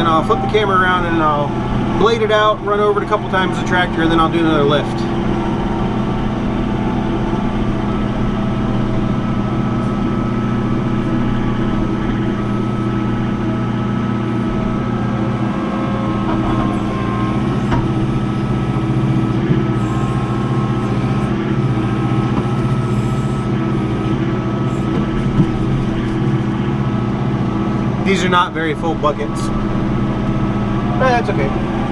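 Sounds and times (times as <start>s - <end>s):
tractor diesel engine running: 0.0s - 31.9s.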